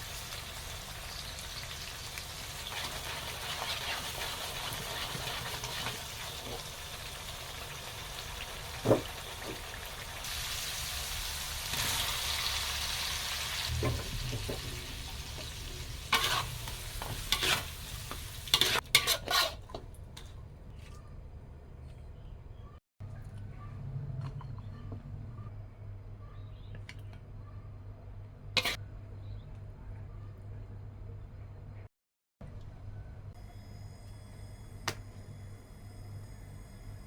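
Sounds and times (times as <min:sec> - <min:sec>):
food sizzling in a pan: 0:00.0 - 0:19.6.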